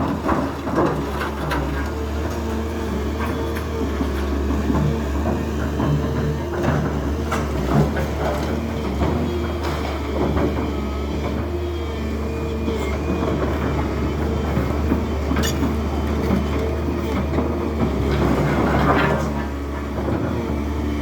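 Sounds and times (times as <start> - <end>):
demolition machinery running: 0.0 - 21.0
metal knocks and scraping: 14.5 - 20.0
sharp metal clang: 15.4 - 15.7.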